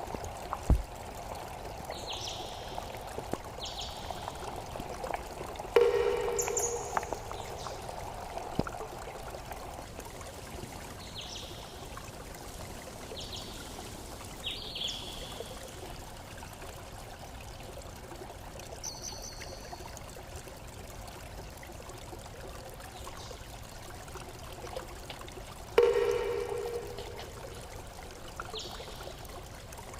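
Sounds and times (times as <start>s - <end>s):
trickling water: 0.0s - 29.9s
short high chirps: 5.8s - 7.4s.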